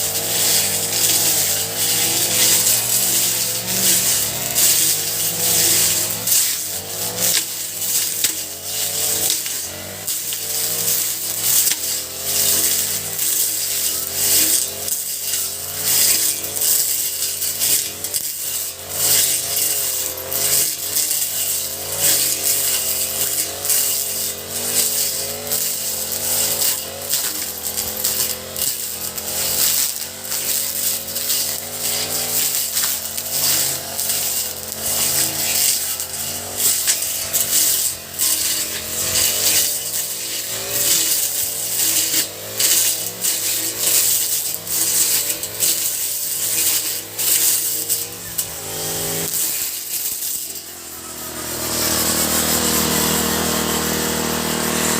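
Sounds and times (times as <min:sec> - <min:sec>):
brush cutter engine running: 0:00.0 - 0:54.9.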